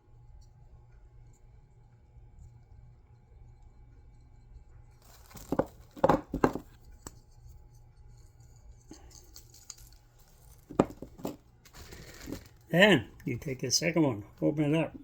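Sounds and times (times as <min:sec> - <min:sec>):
low steady hum: 0:00.0 - 0:15.0
crinkling and rustling: 0:05.0 - 0:07.2, 0:08.9 - 0:13.4.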